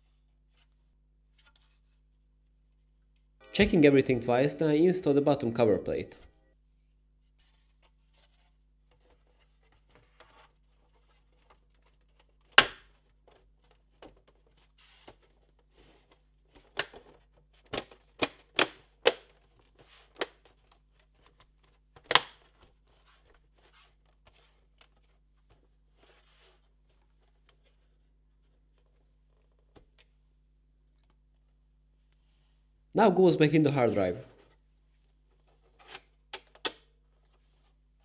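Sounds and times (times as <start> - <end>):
loud plastic snaps: 12.6 - 12.8, 22.1 - 22.4.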